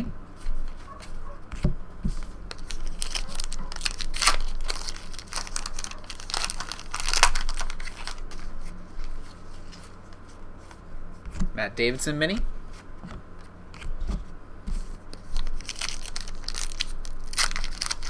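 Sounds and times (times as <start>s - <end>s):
wrapper crinkling and tearing: 2.5s - 8.6s, 15.2s - 18.0s.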